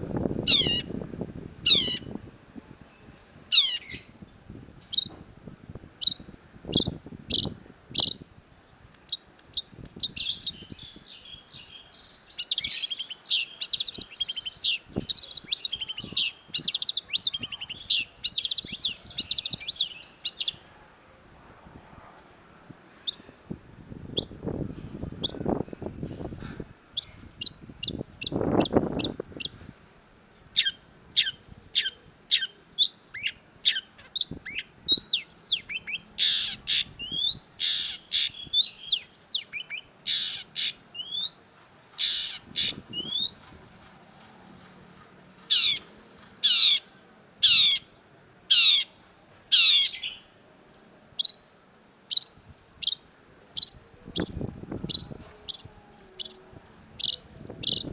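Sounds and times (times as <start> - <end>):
bird calling in sharp notes: 0.5 - 0.9.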